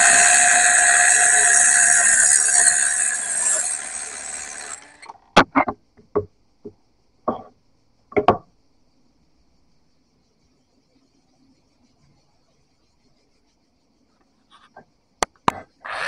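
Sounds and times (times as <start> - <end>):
power tool winding down: 0.0 - 5.2
tools knocking on a bench: 5.4 - 7.5, 8.1 - 8.5.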